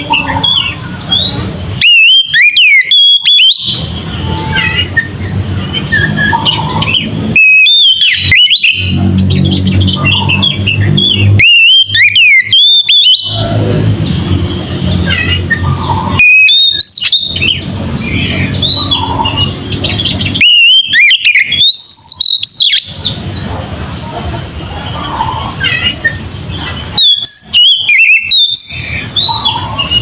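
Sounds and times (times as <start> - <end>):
bird singing whistled notes: 0.0 - 23.5, 25.6 - 30.0.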